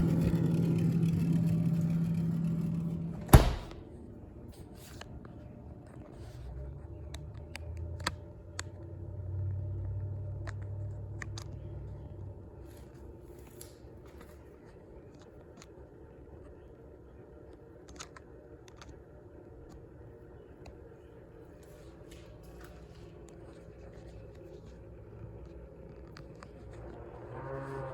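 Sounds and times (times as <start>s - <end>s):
refrigerator humming: 0.0s - 4.8s.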